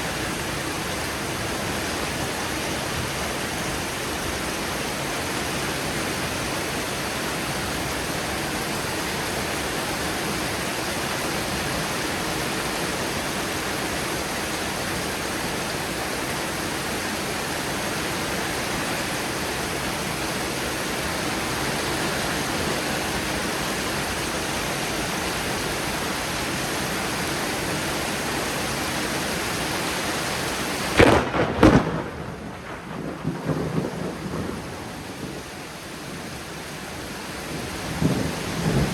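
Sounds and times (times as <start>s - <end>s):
heavy rain pouring: 0.0s - 38.9s
loud thunder crack and rumble: 31.0s - 35.5s, 37.5s - 38.9s.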